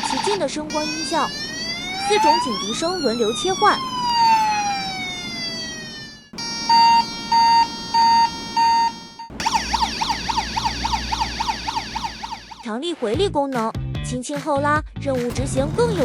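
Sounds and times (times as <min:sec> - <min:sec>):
toy electronic siren: 0:00.0 - 0:12.7.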